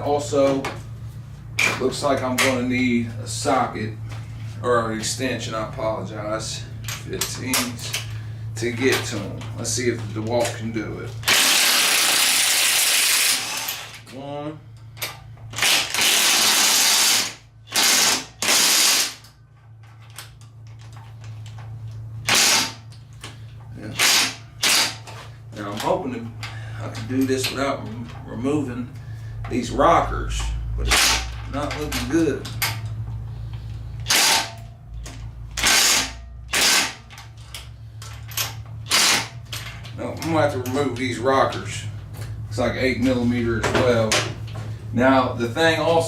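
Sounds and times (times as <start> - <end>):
impact wrench bursts: 11.2 - 14.0, 14.9 - 19.4, 22.2 - 25.3, 30.8 - 32.9, 34.0 - 34.7, 35.5 - 39.9.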